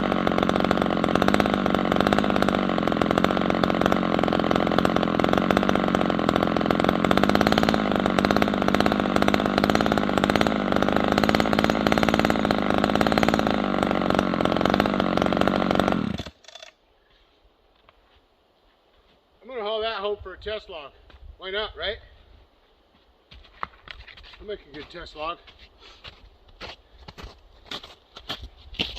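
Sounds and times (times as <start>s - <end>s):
chainsaw running: 0.0s - 16.8s.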